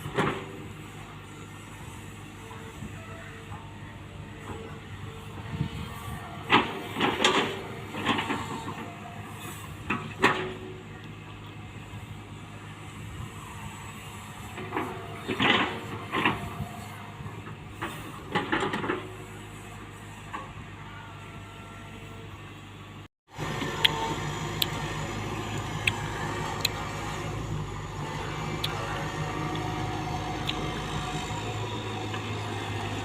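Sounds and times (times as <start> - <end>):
excavator running: 0.0 - 33.0
sharp clanks and scrapes: 6.5 - 10.7, 14.4 - 16.9, 17.8 - 20.6.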